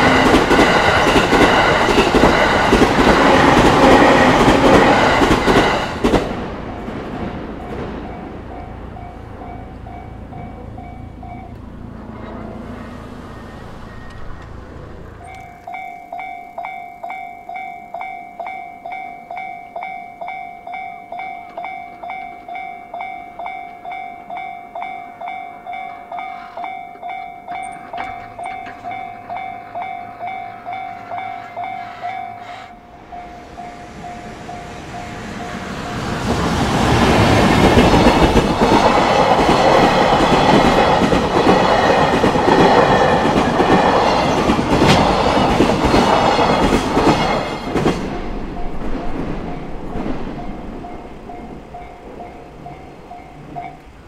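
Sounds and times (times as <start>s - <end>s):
train wheels clattering on rails: 0.0s - 11.8s, 13.8s - 54.0s
level crossing electronic bell: 15.2s - 35.7s.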